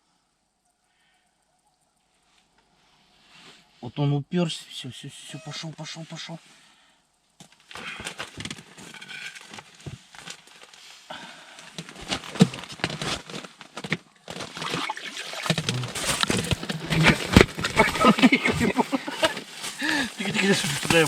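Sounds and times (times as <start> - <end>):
slush and water splashing: 14.4 - 21.0
crackling scraping clicks: 15.5 - 21.0.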